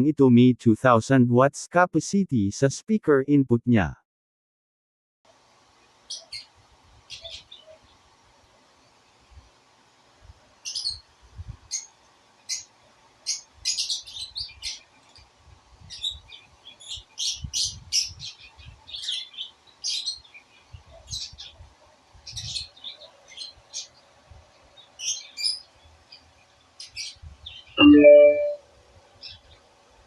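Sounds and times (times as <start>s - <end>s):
small birds chirping: 5.9s - 8.1s, 10.6s - 11.1s, 11.7s - 28.6s.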